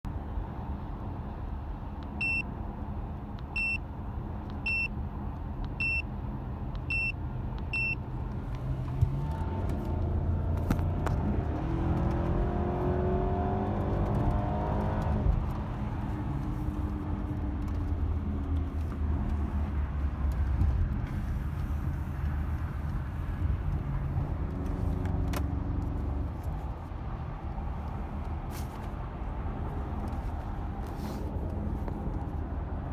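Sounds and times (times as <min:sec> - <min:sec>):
warning beeps: 0:04.6 - 0:04.9, 0:05.8 - 0:06.0, 0:06.8 - 0:08.0.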